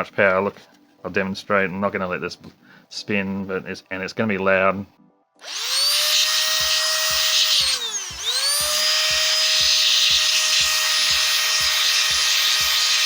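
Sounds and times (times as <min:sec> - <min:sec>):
electric blower motor whine: 0:05.4 - 0:13.0.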